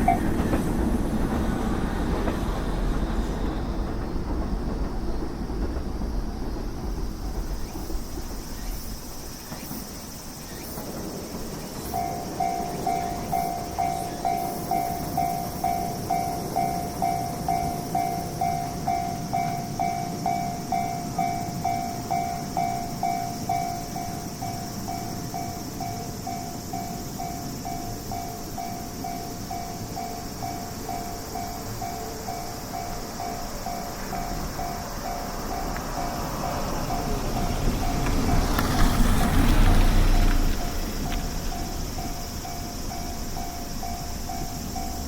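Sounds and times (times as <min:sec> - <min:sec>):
train rumble: 0:00.0 - 0:45.0
level crossing warning bell: 0:11.9 - 0:45.0.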